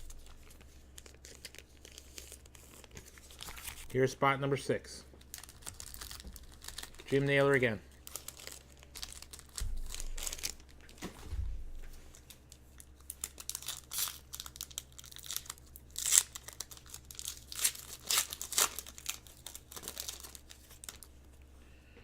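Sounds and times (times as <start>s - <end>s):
wrapper being torn and crinkled: 0.0s - 3.9s, 5.2s - 7.3s, 7.9s - 10.9s, 12.1s - 21.1s
dull low thumps: 9.6s - 10.2s.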